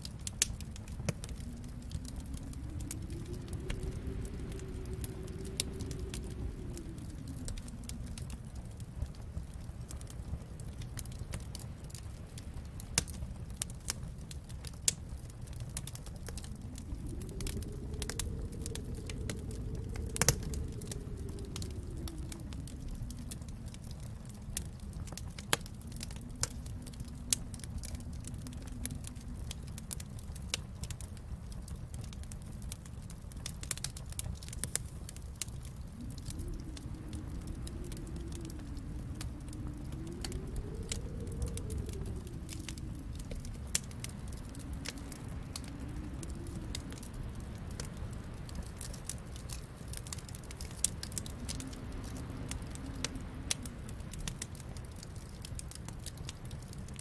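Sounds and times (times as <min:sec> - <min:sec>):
low steady rumble: 0:00.0 - 0:57.0
wood fire crackling and popping: 0:00.0 - 0:57.0.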